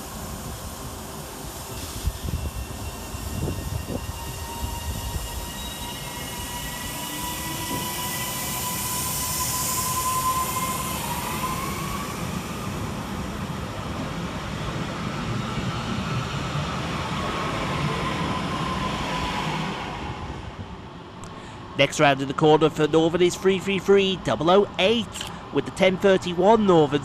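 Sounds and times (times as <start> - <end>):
rumble of wheels on rail: 0.0 - 27.0
traction motors whining: 2.1 - 13.4.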